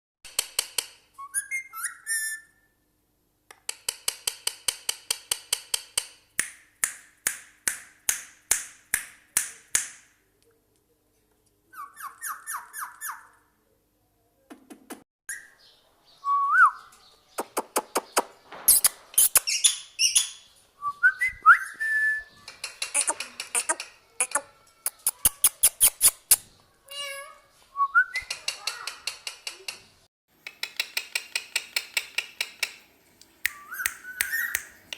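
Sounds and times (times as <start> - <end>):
parrot chirping: 1.2 - 2.6, 11.7 - 13.4, 18.0 - 20.6, 33.4 - 34.9.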